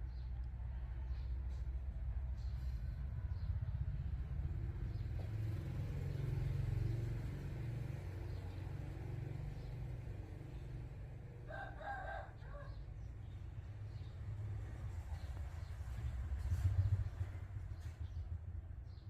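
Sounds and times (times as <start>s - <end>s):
steady low rumble: 0.0s - 5.4s
rooster crowing: 11.4s - 12.8s.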